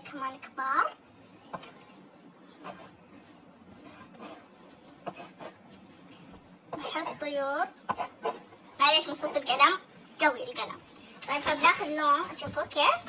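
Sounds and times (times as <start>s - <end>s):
pencil scratching on paper: 1.6s - 1.8s, 2.6s - 9.8s.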